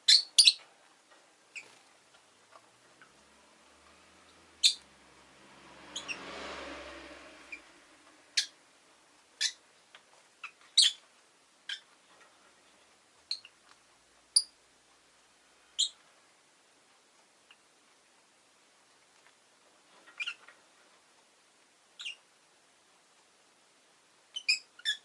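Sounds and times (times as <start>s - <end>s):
bird chirping: 0.0s - 0.7s, 4.6s - 4.9s, 5.9s - 6.2s, 8.3s - 8.6s, 9.4s - 9.6s, 10.4s - 11.0s, 11.6s - 11.9s, 13.2s - 13.6s, 15.7s - 16.0s, 20.0s - 20.5s, 22.0s - 22.2s, 24.3s - 25.0s
vehicle passing: 2.9s - 9.0s.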